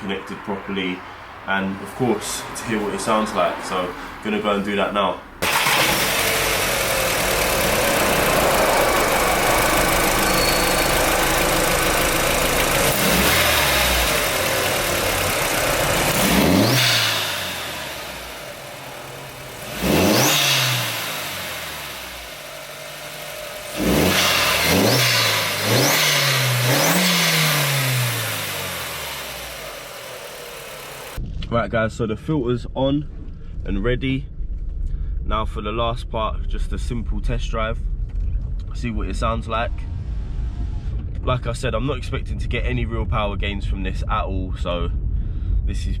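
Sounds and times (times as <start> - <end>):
car engine idling and revving: 0.0 - 31.3, 37.8 - 41.9.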